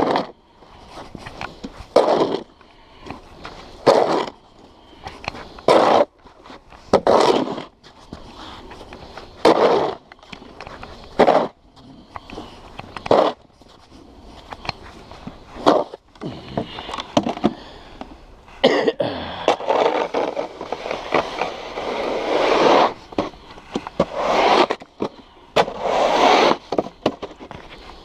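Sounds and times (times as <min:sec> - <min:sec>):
snow shovel scraping snow: 0:03.4 - 0:04.3, 0:05.4 - 0:10.0, 0:10.8 - 0:12.0, 0:19.5 - 0:27.1.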